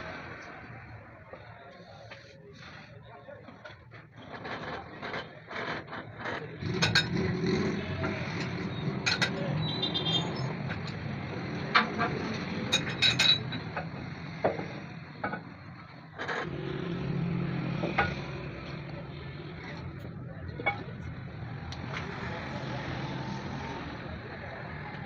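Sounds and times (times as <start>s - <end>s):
metal tools clinking and knocking: 6.7s - 7.2s, 8.3s - 9.4s, 11.7s - 14.6s.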